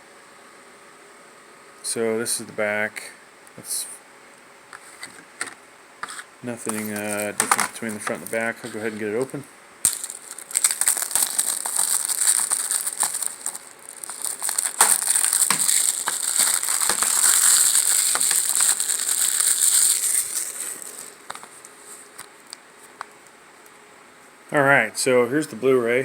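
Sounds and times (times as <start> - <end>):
plastic wrapping crinkling and tearing: 6.6 - 22.6.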